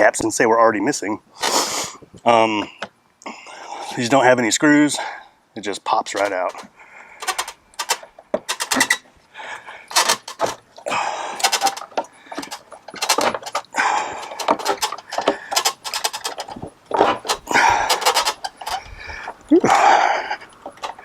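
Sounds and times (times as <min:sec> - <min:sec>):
plastic clips clicking and snapping: 0:06.1 - 0:09.0, 0:09.9 - 0:10.6, 0:11.4 - 0:19.5
rasping plastic scrapes: 0:09.9 - 0:10.6, 0:11.4 - 0:19.4.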